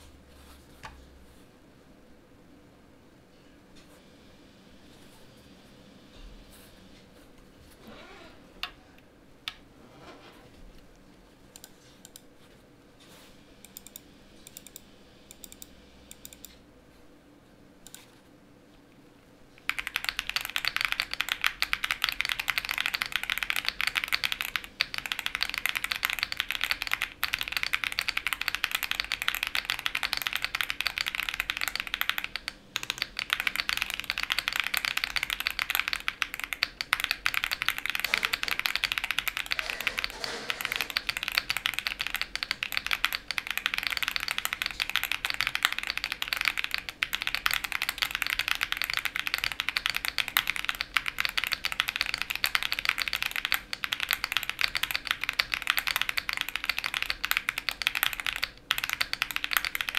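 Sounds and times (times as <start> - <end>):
mechanical keyboard typing: 13.7 - 16.6, 19.6 - 59.9.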